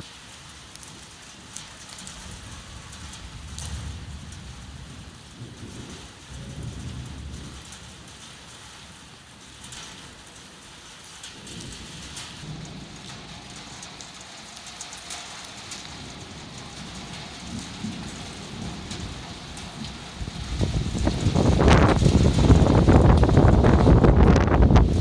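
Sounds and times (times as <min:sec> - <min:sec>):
steady rain hiss: 0:00.0 - 0:25.0
low rumbles: 0:16.1 - 0:25.0.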